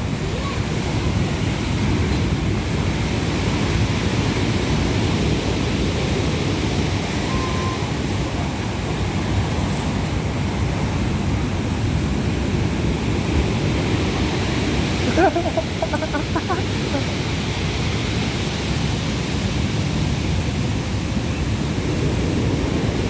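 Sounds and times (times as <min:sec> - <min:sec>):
sea surf rushing: 0:00.0 - 0:23.0.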